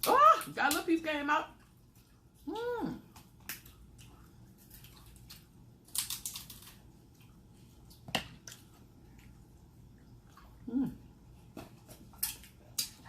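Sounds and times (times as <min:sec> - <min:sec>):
crab legs cracking: 0:03.0 - 0:07.2, 0:11.8 - 0:13.0.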